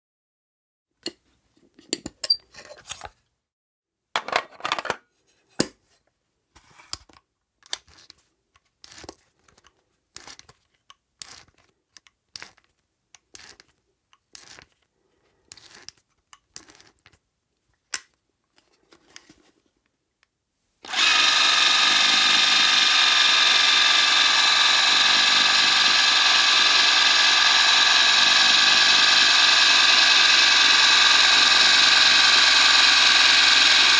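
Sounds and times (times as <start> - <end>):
camera motor whir: 20.9 - 33.9.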